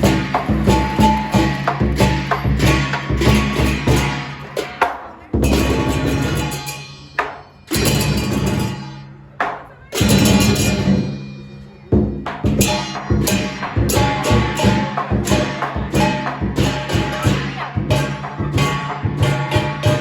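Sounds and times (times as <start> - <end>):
gong: 0.0 - 4.5, 12.5 - 20.0
cymbals crashing: 0.0 - 20.0
drum: 0.0 - 20.0.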